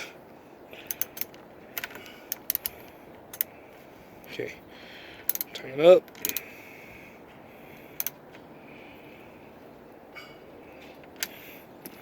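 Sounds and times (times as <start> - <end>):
hand tool clicks on bolts: 0.8 - 3.5, 5.3 - 6.5.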